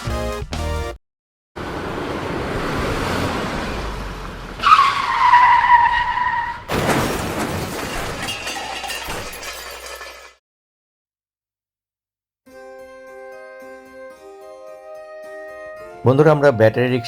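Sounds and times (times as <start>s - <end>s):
music: 0.0s - 1.0s, 12.5s - 17.0s
vehicle running noise: 1.6s - 6.2s.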